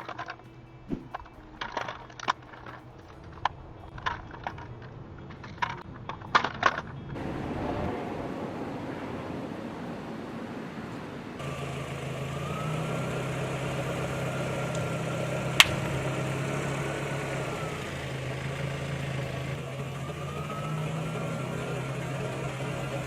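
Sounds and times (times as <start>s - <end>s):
car engine humming: 0.0s - 23.0s
faint engine whine: 0.0s - 23.0s
sharp crack: 11.4s - 23.0s.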